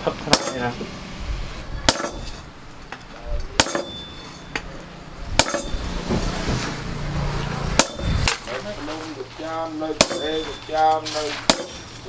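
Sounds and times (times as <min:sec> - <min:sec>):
hammer striking steel: 0:00.3 - 0:00.8, 0:01.8 - 0:04.8, 0:05.4 - 0:06.2, 0:07.7 - 0:08.4, 0:09.9 - 0:12.0.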